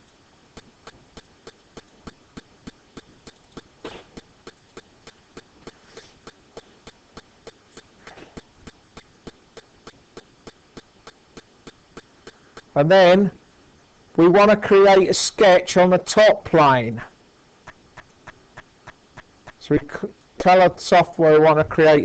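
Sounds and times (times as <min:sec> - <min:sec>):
quiet sharp clicks: 0:00.0 - 0:12.8, 0:17.6 - 0:20.6.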